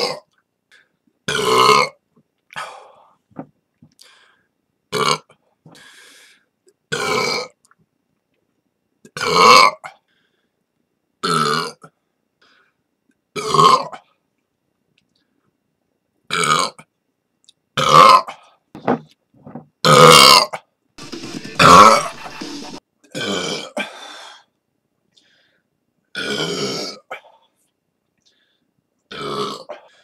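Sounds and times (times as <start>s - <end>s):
person burping: 1.3s - 2.0s, 17.8s - 18.3s, 19.8s - 20.6s, 29.1s - 29.7s.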